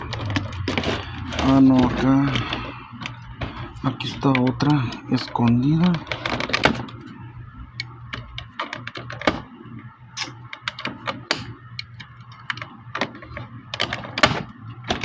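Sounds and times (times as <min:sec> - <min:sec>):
plastic toy packaging being handled: 0:00.0 - 0:07.1
low steady hum: 0:00.0 - 0:15.0.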